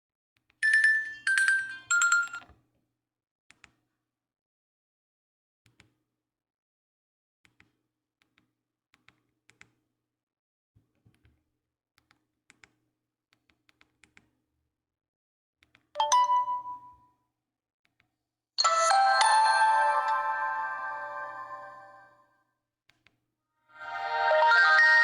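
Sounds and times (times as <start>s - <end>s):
phone ringtone: 0.6s - 2.4s, 16.0s - 17.0s, 18.6s - 22.2s, 23.8s - 25.0s.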